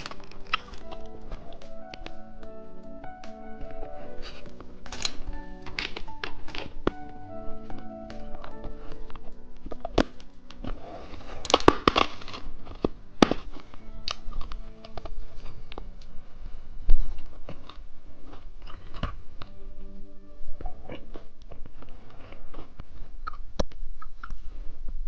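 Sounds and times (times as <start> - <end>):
candy crunching and chewing: 0.0 - 1.8, 8.3 - 16.0
soft background music: 0.0 - 22.8.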